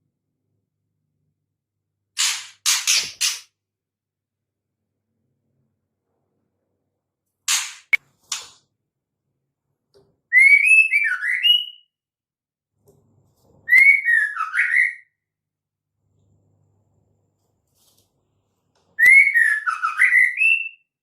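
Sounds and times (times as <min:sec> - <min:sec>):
bird whistled phrases: 0:10.3 - 0:11.9, 0:13.7 - 0:15.1, 0:19.0 - 0:20.9.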